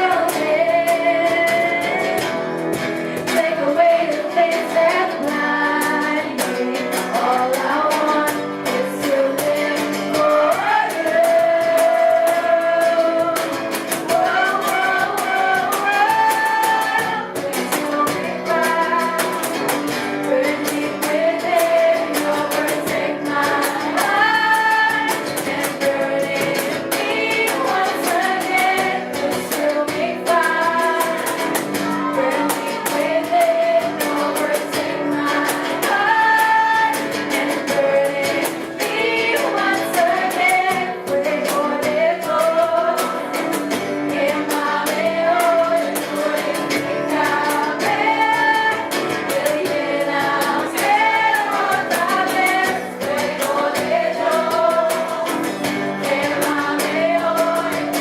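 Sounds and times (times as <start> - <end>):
person singing a melody: 0.0 - 2.4, 3.0 - 58.0.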